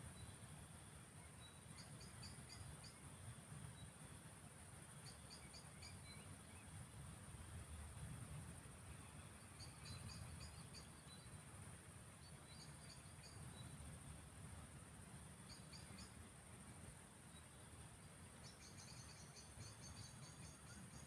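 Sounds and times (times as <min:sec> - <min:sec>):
insect chirping: 0:00.1 - 0:03.1, 0:04.8 - 0:06.7, 0:08.9 - 0:11.6, 0:12.2 - 0:21.0.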